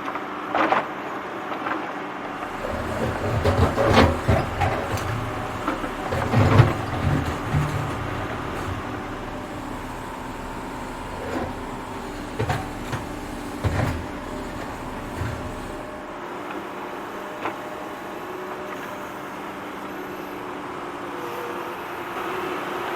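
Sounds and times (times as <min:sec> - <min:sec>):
digging gear clanking: 0:02.4 - 0:15.9
excavator engine running: 0:02.4 - 0:16.2.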